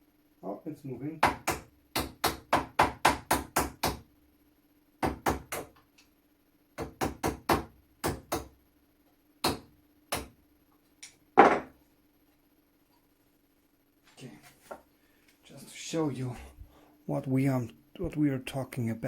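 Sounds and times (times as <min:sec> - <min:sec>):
hammer striking a punch: 0:01.2 - 0:04.0, 0:05.0 - 0:05.8, 0:06.8 - 0:08.5, 0:09.4 - 0:10.4.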